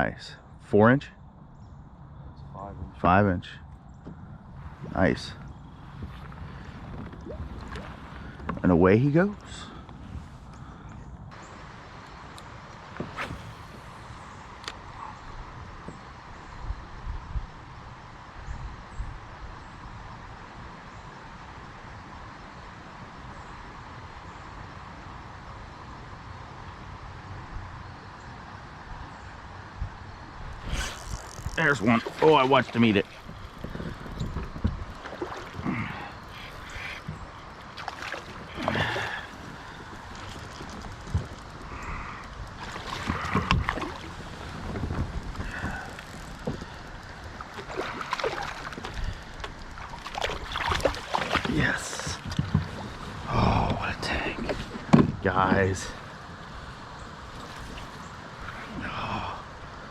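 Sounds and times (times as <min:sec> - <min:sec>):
wind buffeting microphone: 0:03.8 - 0:11.4, 0:29.6 - 0:59.9
creek water running: 0:04.6 - 0:10.2, 0:30.5 - 0:59.9.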